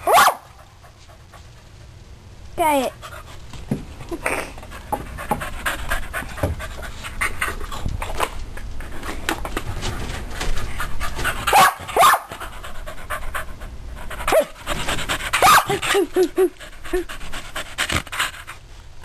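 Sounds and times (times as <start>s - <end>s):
puppy panting: 4.6s - 11.5s, 12.3s - 18.7s.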